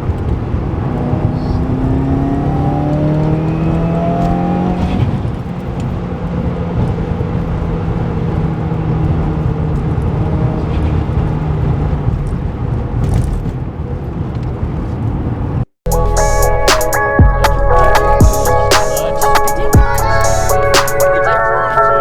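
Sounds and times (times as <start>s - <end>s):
car engine running while driving: 0.0s - 14.1s.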